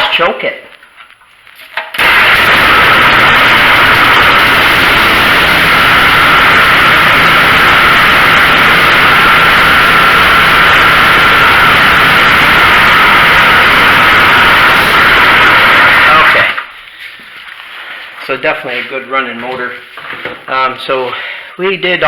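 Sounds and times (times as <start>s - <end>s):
small engine running loudly: 2.0s - 16.6s.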